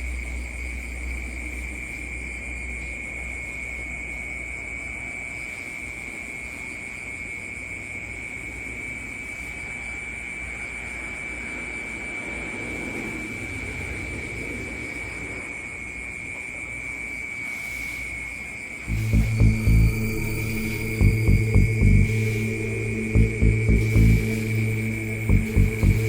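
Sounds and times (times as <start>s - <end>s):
insects trilling: 16.8s - 26.0s
low rumble: 18.9s - 26.0s.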